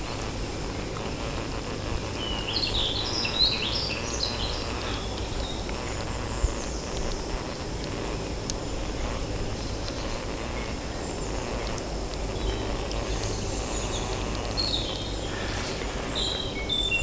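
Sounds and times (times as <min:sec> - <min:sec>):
outdoor background noise: 0:00.0 - 0:17.0
small bird chirping: 0:12.4 - 0:17.0.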